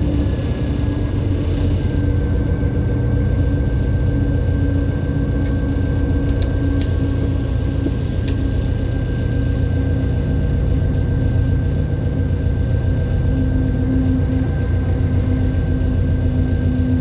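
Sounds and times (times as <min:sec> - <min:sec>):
diesel engine rumbling and whining: 0:00.0 - 0:17.0.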